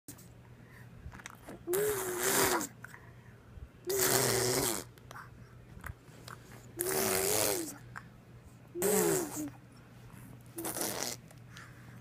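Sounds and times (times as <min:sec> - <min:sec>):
person making buzzing mouth noise: 0:01.6 - 0:02.8, 0:03.8 - 0:05.0, 0:06.8 - 0:07.8, 0:08.7 - 0:09.6, 0:10.6 - 0:11.3.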